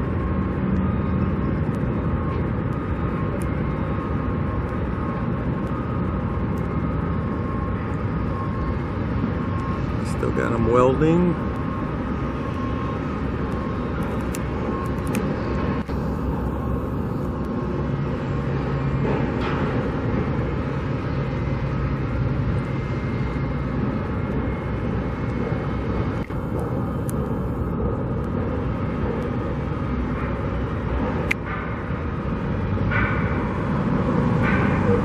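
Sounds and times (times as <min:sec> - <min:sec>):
low engine hum: 0:00.0 - 0:35.0
outdoor background noise: 0:00.0 - 0:35.0.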